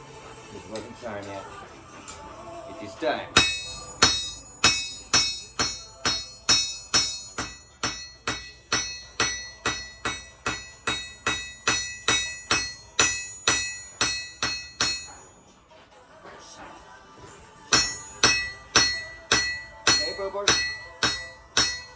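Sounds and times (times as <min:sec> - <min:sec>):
hammer striking metal on anvil: 0:03.3 - 0:15.4, 0:17.7 - 0:21.9.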